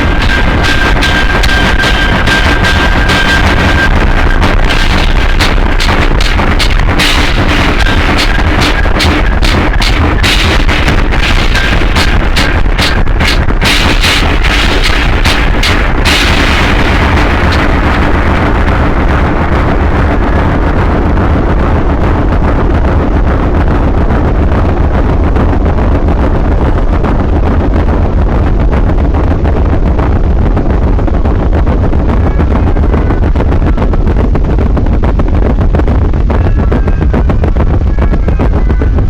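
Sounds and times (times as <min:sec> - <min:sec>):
faint pitched notes: 0:00.0 - 0:20.4
distorted electronic noise: 0:00.0 - 0:39.0.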